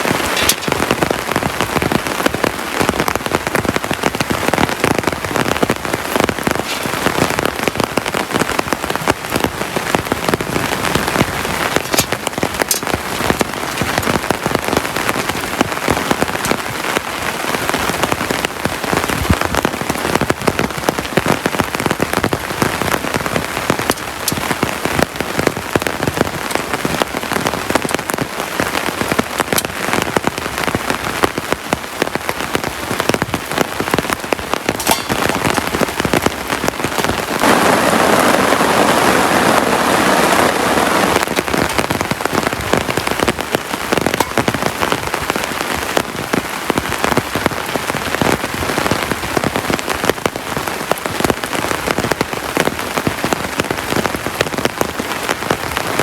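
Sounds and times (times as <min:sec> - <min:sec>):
heavy rain falling: 0:00.0 - 0:56.0
raindrops ticking on surface: 0:00.0 - 0:56.0
loud rush: 0:36.8 - 0:43.2.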